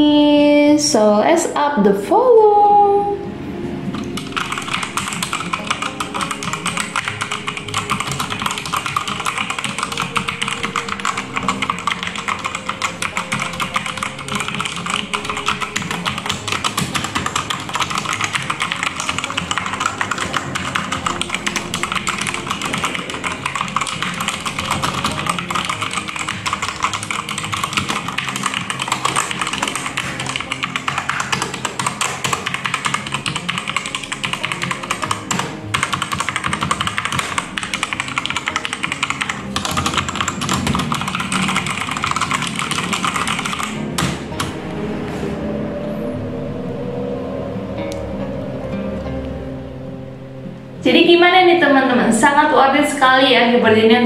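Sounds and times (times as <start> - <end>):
fast mechanical keyboard typing: 4.0 - 44.5.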